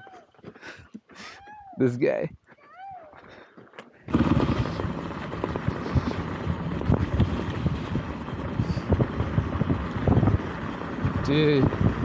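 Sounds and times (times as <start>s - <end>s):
dirt bike engine rumble: 4.1s - 12.0s
wind on microphone: 4.1s - 12.0s.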